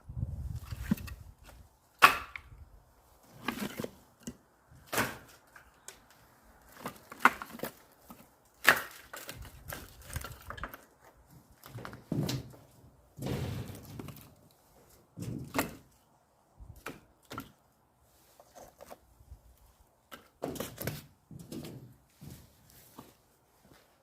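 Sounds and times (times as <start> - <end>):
axe splitting firewood: 0.5 - 2.6, 3.2 - 11.0, 13.2 - 14.4, 15.1 - 16.0, 20.1 - 21.9.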